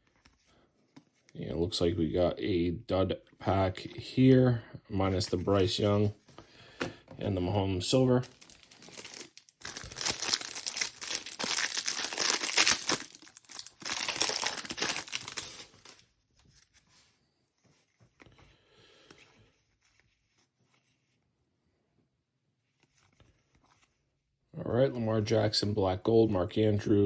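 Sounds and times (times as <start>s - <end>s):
faint handling sounds: 0.0s - 2.2s, 2.9s - 24.2s
wrapper torn and crinkled: 8.2s - 16.0s.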